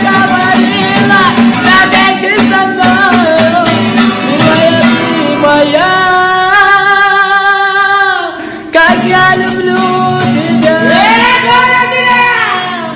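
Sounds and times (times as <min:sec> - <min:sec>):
instrumental accompaniment: 0:00.0 - 0:06.5.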